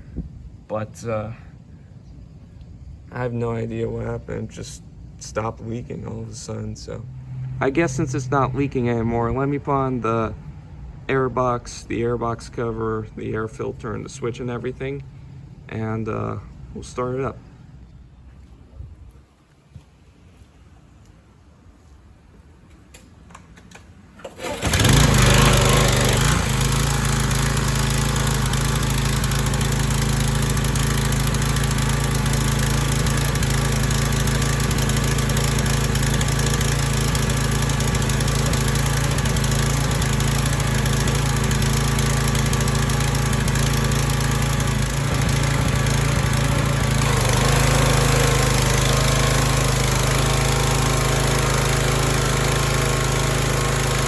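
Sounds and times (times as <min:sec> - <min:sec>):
small gasoline engine running: 0:24.2 - 0:54.0.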